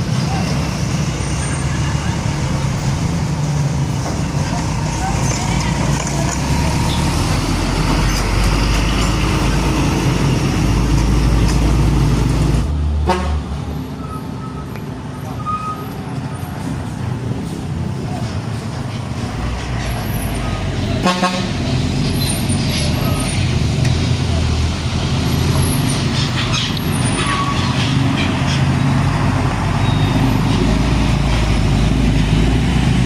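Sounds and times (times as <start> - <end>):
heavy diesel trucks passing: 0.0 - 33.0.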